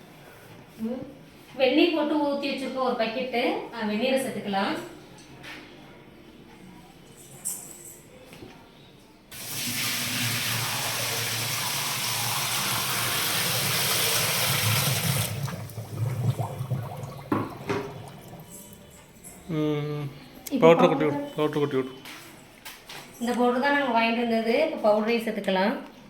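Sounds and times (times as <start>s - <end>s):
water pouring into washing machine: 9.3s - 19.2s
water splashes: 13.6s - 19.0s.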